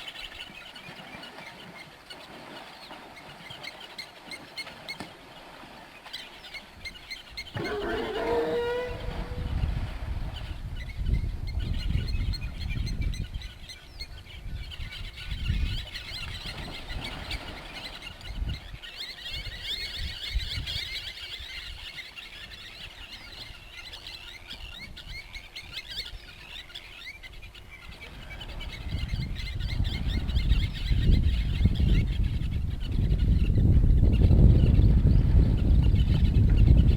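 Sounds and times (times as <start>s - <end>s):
many birds chirping: 0.0s - 36.9s
low rumbling noise: 7.6s - 10.4s.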